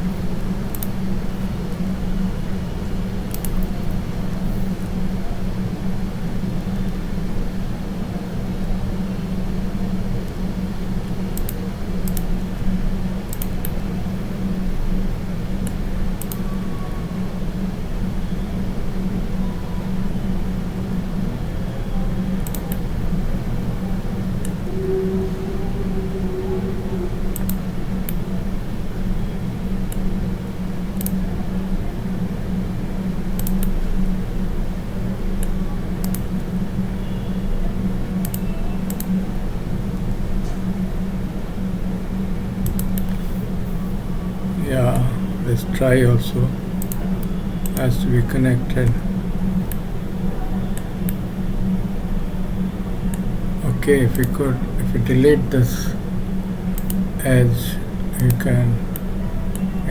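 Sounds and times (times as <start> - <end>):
steady low hum: 0.0 - 59.9
computer input clicks: 3.3 - 3.7, 15.6 - 16.5, 33.4 - 33.8, 38.2 - 39.2, 56.8 - 57.0.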